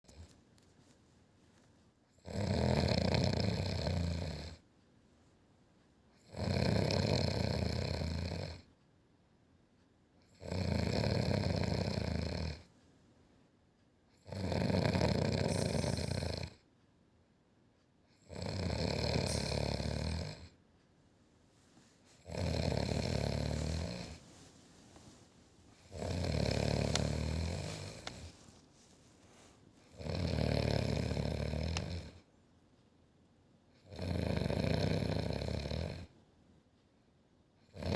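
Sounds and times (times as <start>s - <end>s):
snoring: 0.1s - 0.4s, 2.2s - 4.6s, 6.2s - 8.7s, 10.2s - 12.7s, 14.2s - 16.7s, 18.1s - 20.6s, 22.2s - 24.2s, 25.7s - 28.5s, 29.8s - 32.3s, 33.7s - 36.2s, 37.6s - 37.9s
quiet breaths: 0.1s - 17.0s, 17.8s - 37.9s.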